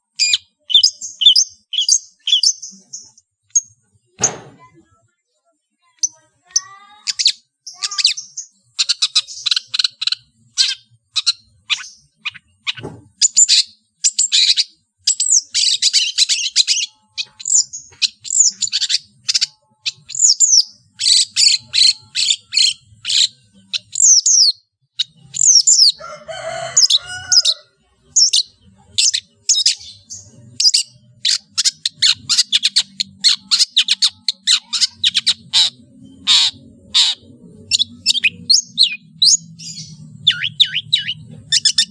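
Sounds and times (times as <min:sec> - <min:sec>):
shrike singing: 0:15.2 - 0:41.9.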